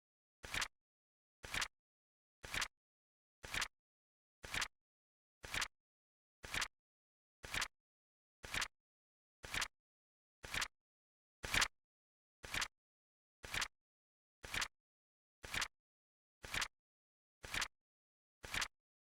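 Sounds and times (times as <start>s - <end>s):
flip clock click-flap: 0.4s - 0.7s, 1.4s - 1.7s, 2.4s - 2.7s, 3.4s - 3.7s, 4.4s - 4.7s, 5.4s - 5.7s, 6.4s - 6.7s, 7.4s - 7.7s, 8.4s - 8.7s, 9.4s - 9.7s, 10.4s - 10.7s, 11.4s - 11.7s, 12.4s - 12.7s, 13.4s - 13.7s, 14.4s - 14.7s, 15.4s - 15.7s, 16.4s - 16.7s, 17.4s - 17.7s, 18.4s - 18.7s.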